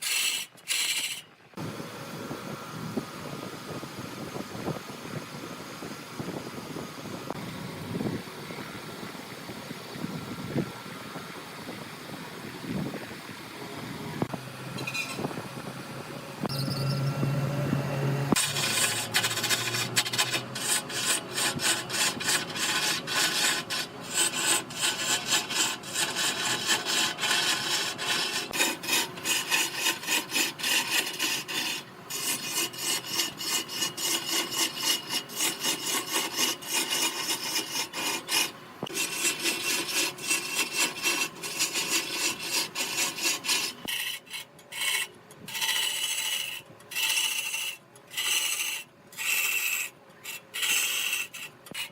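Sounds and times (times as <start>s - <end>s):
tool scraping wood on lathe: 0.0s - 1.4s, 18.3s - 51.9s.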